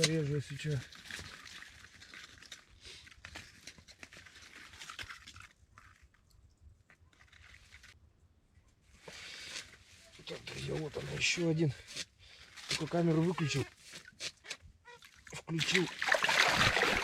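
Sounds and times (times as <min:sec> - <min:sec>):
small clicks and crunches: 0:00.0 - 0:08.0.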